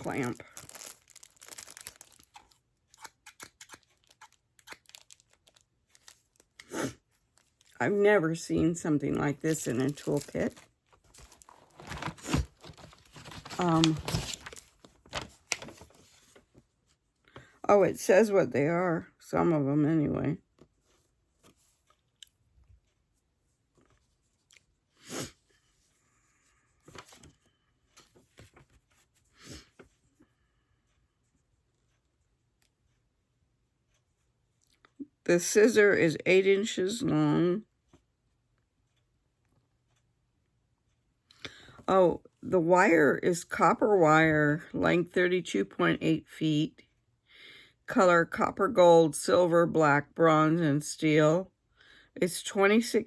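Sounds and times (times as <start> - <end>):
packaging crinkling rustles: 0.0 - 7.8, 9.3 - 16.6.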